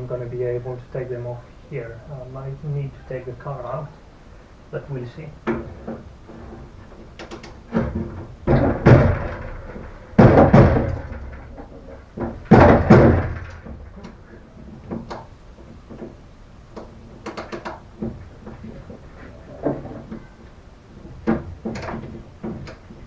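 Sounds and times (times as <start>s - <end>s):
heavy metal knocks ringing: 7.7s - 14.0s.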